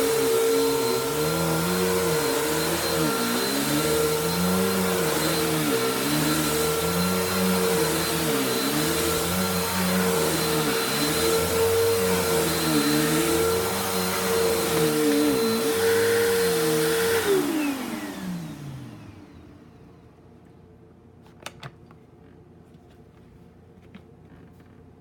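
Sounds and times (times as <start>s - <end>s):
vacuum motor spinning down: 0.0s - 19.8s
vacuum cleaner running: 0.0s - 20.0s.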